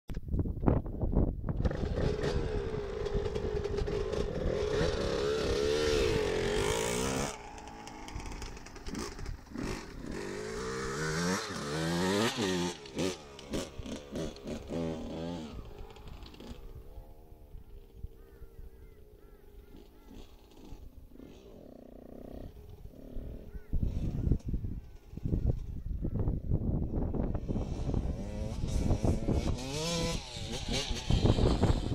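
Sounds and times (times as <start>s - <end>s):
dirt bike engine revving: 1.6s - 26.1s, 26.9s - 31.9s.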